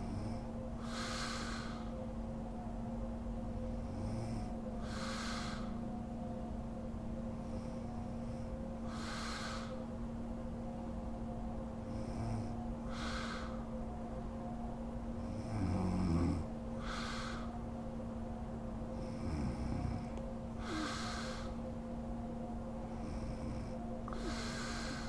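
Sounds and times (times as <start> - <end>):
steady background hum: 0.0 - 25.0
airy breaths: 0.8 - 2.1, 4.8 - 5.9, 8.8 - 10.0, 12.4 - 13.9, 16.7 - 17.7, 19.1 - 21.8, 24.1 - 25.0
woman snoring: 15.3 - 17.5, 19.2 - 21.6.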